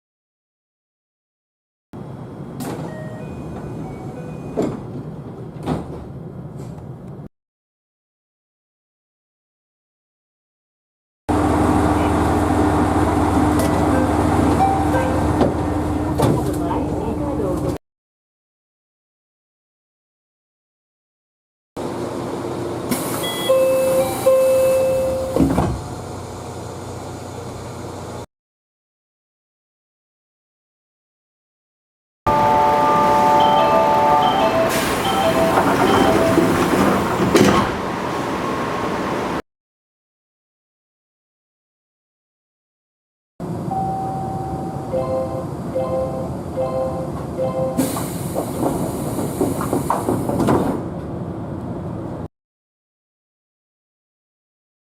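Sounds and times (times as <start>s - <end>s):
train low hum: 2.0s - 7.3s, 11.3s - 17.8s, 21.8s - 28.3s, 32.3s - 39.4s, 43.4s - 52.3s
train doors closing thuds: 4.4s - 6.9s, 25.3s - 25.9s, 32.3s - 38.0s, 47.2s - 51.2s
train humming: 11.3s - 17.7s, 32.3s - 39.4s
door chime: 32.3s - 36.6s, 43.7s - 47.8s.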